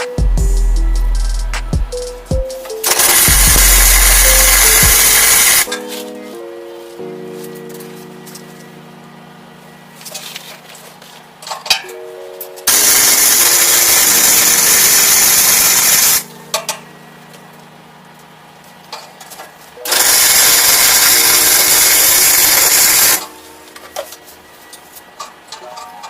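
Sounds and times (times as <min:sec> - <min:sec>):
quiet background music: 0:00.0 - 0:26.0
welding crackling hiss: 0:02.8 - 0:05.7, 0:12.7 - 0:16.3, 0:19.9 - 0:23.4.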